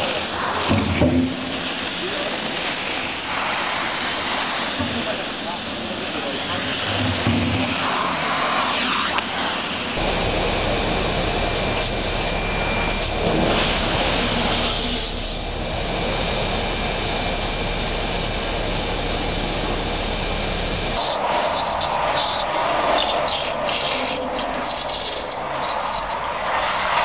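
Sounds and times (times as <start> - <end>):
vacuum cleaner air rush: 0.0 - 21.0.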